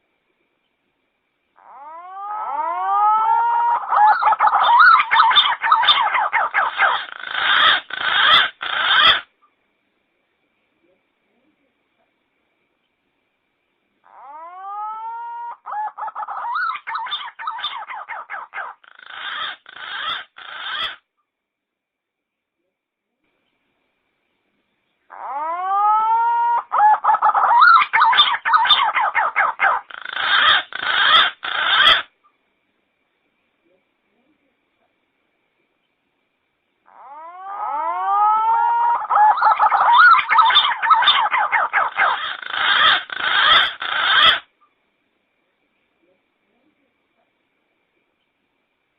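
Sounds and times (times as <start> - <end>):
pigeon calls: 1.6 - 9.3, 14.1 - 21.0, 25.1 - 32.1, 36.9 - 44.5
harsh rasping bird notes: 39.0 - 44.4.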